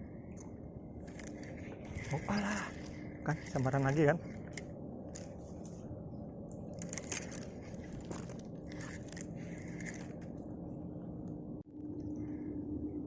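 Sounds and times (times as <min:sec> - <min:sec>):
small scrapes and crackles: 0:01.0 - 0:05.9, 0:06.5 - 0:10.5.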